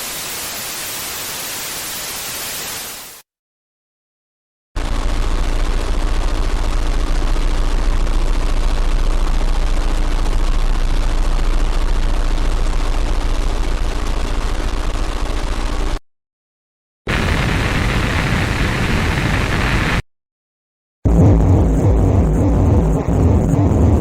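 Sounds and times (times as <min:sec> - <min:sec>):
television static hiss: 0:00.0 - 0:03.2, 0:17.1 - 0:20.0
heavy low rumble: 0:21.1 - 0:24.0.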